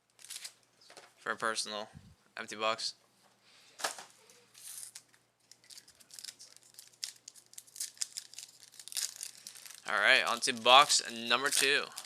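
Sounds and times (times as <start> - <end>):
plastic packaging crinkling and tearing: 0.1 - 0.6, 4.6 - 12.0.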